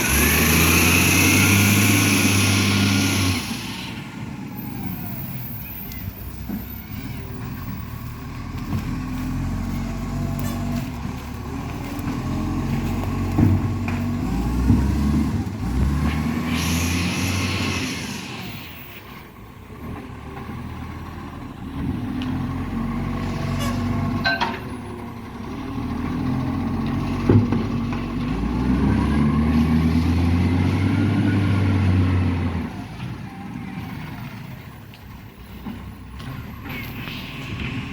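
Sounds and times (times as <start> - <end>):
garbage truck diesel engine: 0.0 - 37.9
air brake hiss: 16.4 - 18.8.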